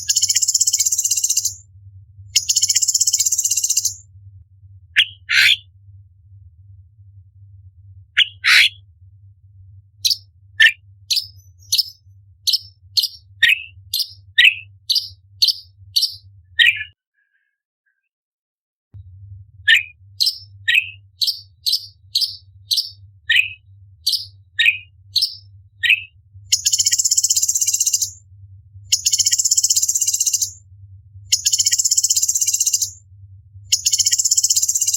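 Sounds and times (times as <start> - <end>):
bird giving sharp calls: 5.0 - 5.6, 8.2 - 8.8.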